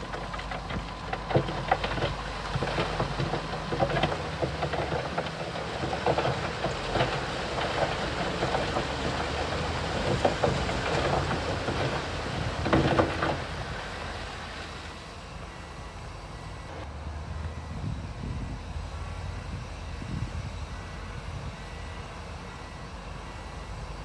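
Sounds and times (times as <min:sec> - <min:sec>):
clanks and crunches of metal and stone: 0:00.0 - 0:14.3
diesel engine running: 0:00.0 - 0:24.0.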